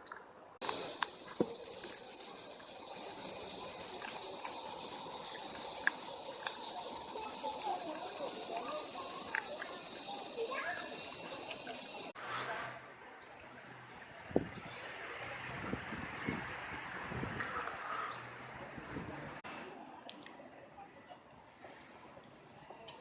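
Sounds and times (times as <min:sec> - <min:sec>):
insects droning: 0:00.6 - 0:12.2.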